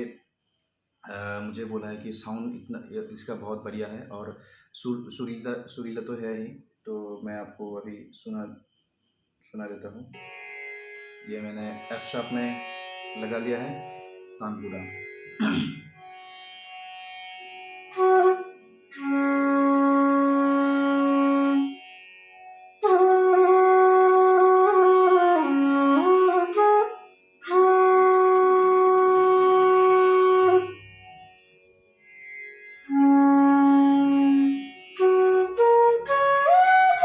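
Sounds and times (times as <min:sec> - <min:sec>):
tanpura drone: 0:01.1 - 0:08.0, 0:09.6 - 0:37.0
bamboo flute notes: 0:11.1 - 0:15.4, 0:16.9 - 0:22.0, 0:22.8 - 0:31.2, 0:32.8 - 0:37.0.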